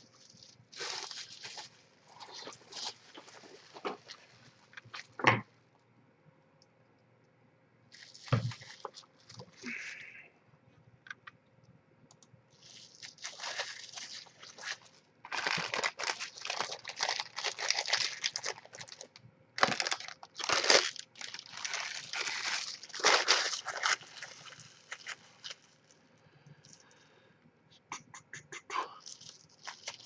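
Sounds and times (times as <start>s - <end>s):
packaging crinkling and rustling: 0.0s - 5.2s, 7.9s - 9.7s, 12.6s - 26.0s, 29.0s - 30.0s.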